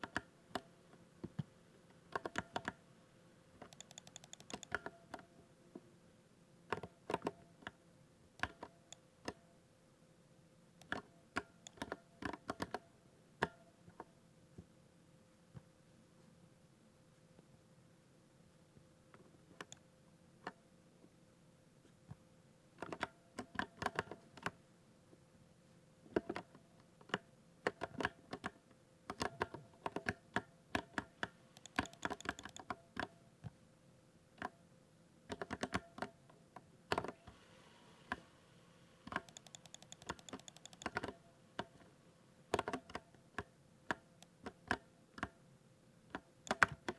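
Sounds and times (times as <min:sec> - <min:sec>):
keyboard typing: 0:03.6 - 0:05.2, 0:10.8 - 0:12.8, 0:27.8 - 0:33.2, 0:39.1 - 0:41.8, 0:46.4 - 0:46.9.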